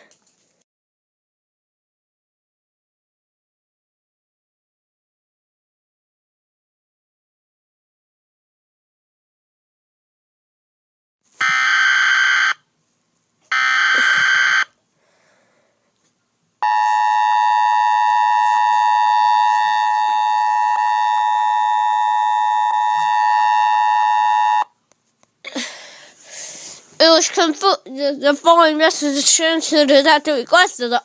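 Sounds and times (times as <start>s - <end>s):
two-tone attention signal: 16.6s - 24.7s.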